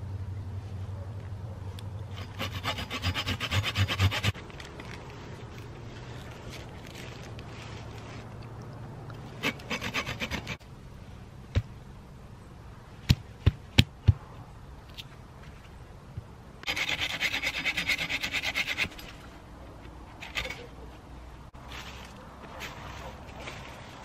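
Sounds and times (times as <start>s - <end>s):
wooden spindle rubbing on board: 9.4s - 10.6s.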